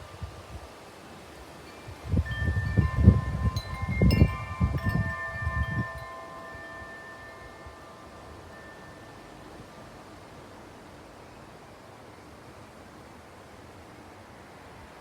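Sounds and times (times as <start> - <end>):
wind chime ringing: 1.6 - 9.8
wind buffeting microphone: 1.8 - 8.6.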